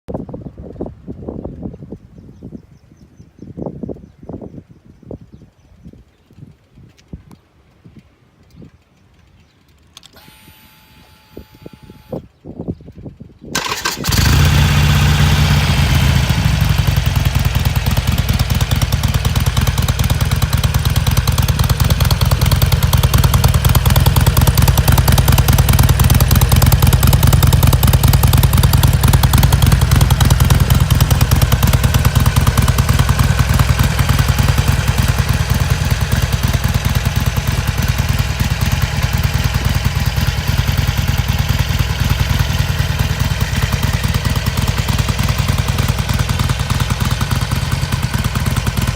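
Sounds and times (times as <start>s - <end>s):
motorcycle engine idling: 13.6s - 48.9s.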